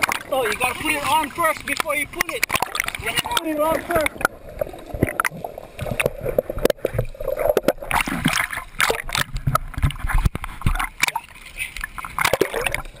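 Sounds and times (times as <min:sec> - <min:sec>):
water splashing and sloshing: 0:00.0 - 0:13.0
voices: 0:00.3 - 0:04.2.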